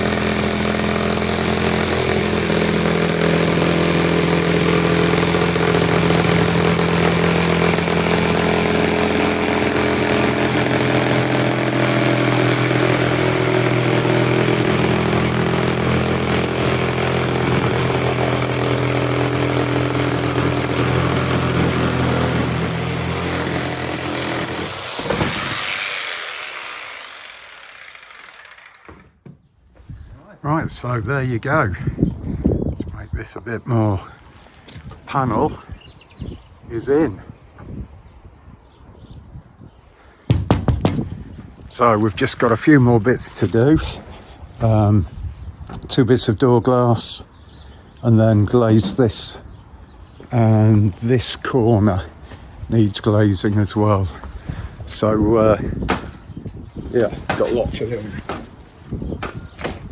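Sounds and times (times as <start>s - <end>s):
electric power saw running: 0.0s - 29.2s.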